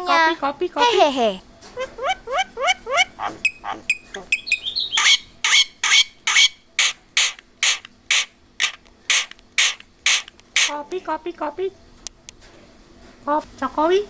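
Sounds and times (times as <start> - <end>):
bird harsh rasping calls: 1.6 - 11.0
bird clicks and whistles: 1.7 - 10.8.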